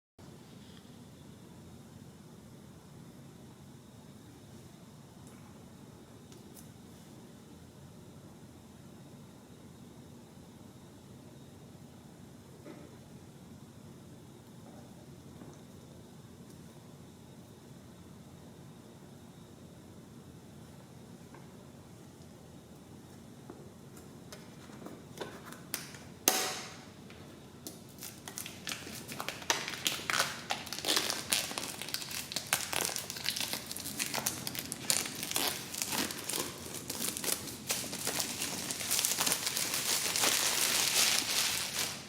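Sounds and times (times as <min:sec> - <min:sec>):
packaging crinkling and rustling: 0:28.0 - 0:42.0.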